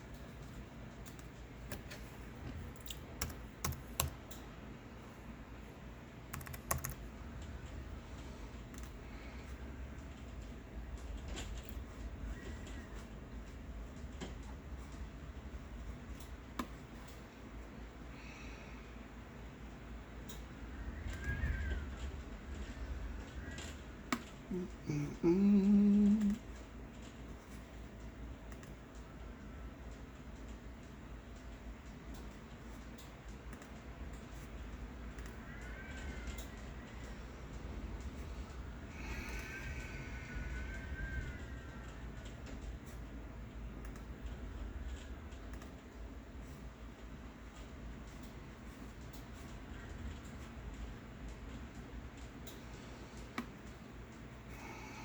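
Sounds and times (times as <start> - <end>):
low background hum: 0.0 - 55.0
computer keyboard keystrokes: 0.1 - 2.1, 2.7 - 4.5, 6.3 - 7.1, 8.6 - 9.0, 21.1 - 21.8, 23.5 - 24.4, 28.5 - 29.1, 29.9 - 34.5, 35.1 - 37.0, 43.8 - 45.8
person humming: 24.5 - 26.6.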